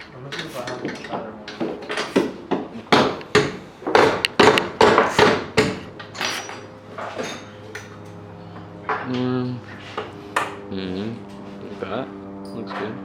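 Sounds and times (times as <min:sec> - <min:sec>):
hammer knocks on metal: 0:01.6 - 0:05.9.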